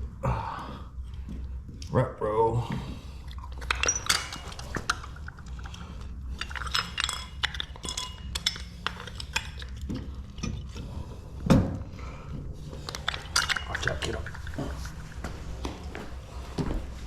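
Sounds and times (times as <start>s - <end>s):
metallic clinks of tools: 3.6s - 5.1s, 6.4s - 9.7s, 12.8s - 15.0s.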